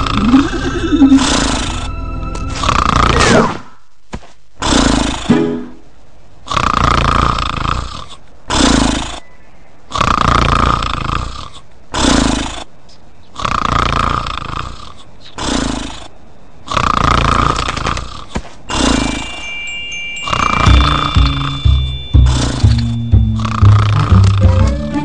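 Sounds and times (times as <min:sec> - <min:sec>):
cartoon snoring with whistle: 0:06.5 - 0:09.3, 0:09.9 - 0:12.7, 0:13.4 - 0:19.3, 0:20.3 - 0:24.7.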